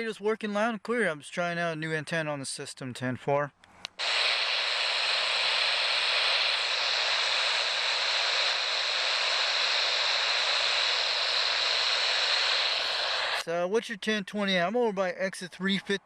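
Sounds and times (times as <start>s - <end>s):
radio static hiss: 4.0s - 13.6s.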